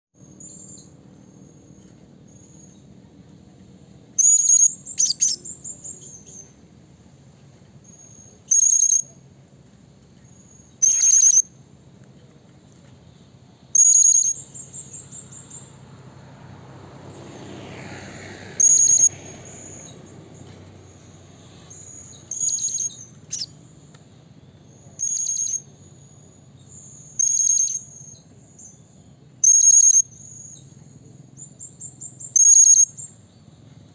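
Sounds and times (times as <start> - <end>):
parrot shrill calls: 10.8 - 11.5.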